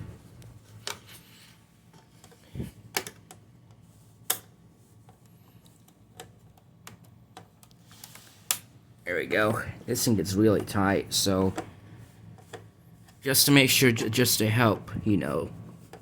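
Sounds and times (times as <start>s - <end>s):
air conditioner hum: 0.0s - 16.0s.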